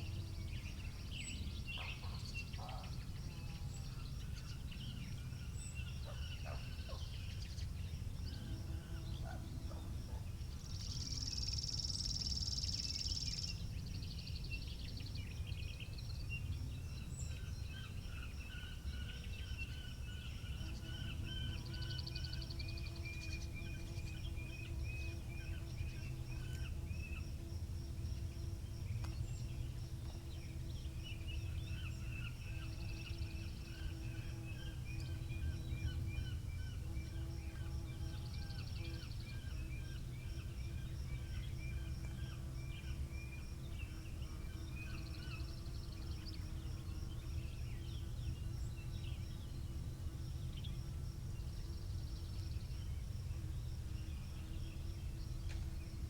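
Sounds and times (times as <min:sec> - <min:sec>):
small birds chirping: 0:00.0 - 0:07.9
faint distant hum: 0:00.0 - 0:56.0.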